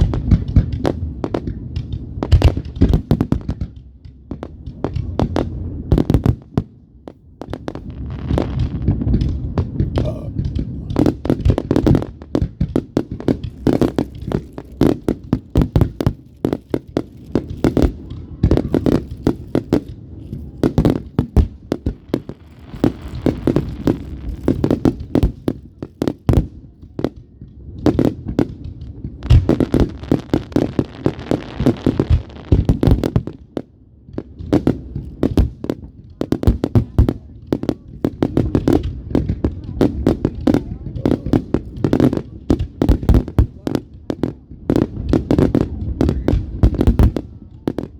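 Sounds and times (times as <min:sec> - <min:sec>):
fireworks banging and popping: 0:00.0 - 0:47.9
fireworks crackling: 0:00.0 - 0:47.9.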